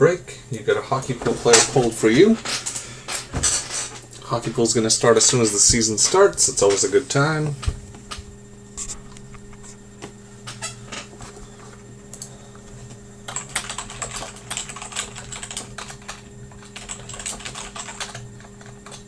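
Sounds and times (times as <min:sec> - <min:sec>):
steady low hum: 0:00.0 - 0:19.0
typing on computer keyboard: 0:13.3 - 0:19.0.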